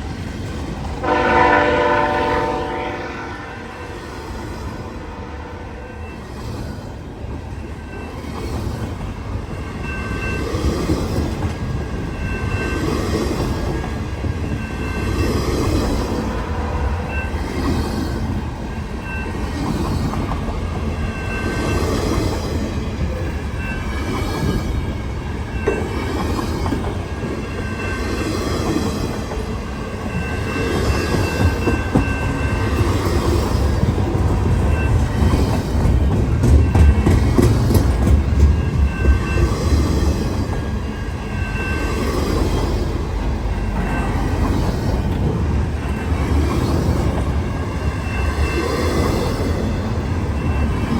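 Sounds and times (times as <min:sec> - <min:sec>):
train wheels knocking on rails: 0:30.2 - 0:40.7.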